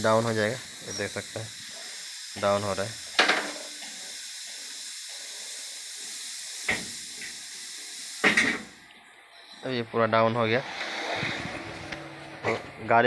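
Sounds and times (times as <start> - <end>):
compressed air hissing: 0.0 - 8.8, 10.3 - 12.8.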